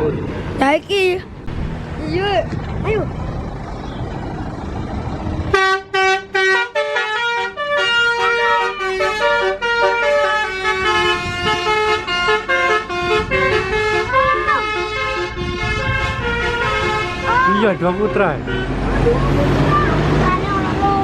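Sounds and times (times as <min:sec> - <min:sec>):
bus engine rumble: 0:00.0 - 0:21.0
traffic: 0:00.0 - 0:21.0
bus horn playing melody: 0:05.5 - 0:18.9.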